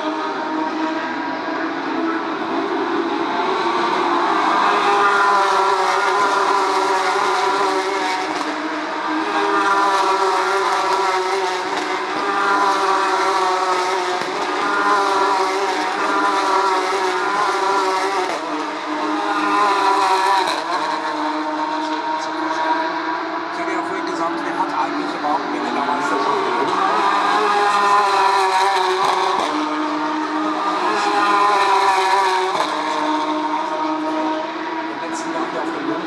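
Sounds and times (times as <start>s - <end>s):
race car engines at high revs: 0.0s - 36.0s.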